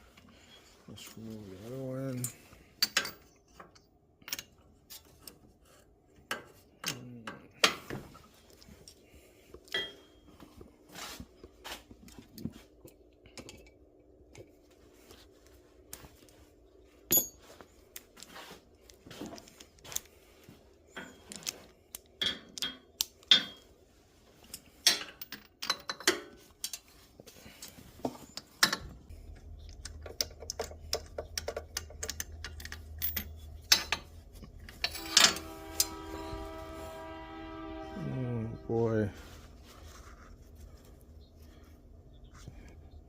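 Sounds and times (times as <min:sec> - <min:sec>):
low steady hum: 0:00.0 - 0:43.0
metal tools clinking: 0:09.7 - 0:10.3, 0:17.1 - 0:17.6, 0:29.9 - 0:36.3.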